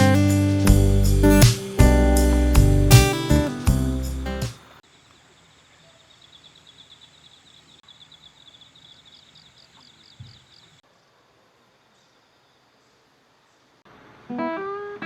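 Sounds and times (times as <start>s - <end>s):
higher chirping series: 0.0s - 4.5s
insects chirping: 0.0s - 13.8s.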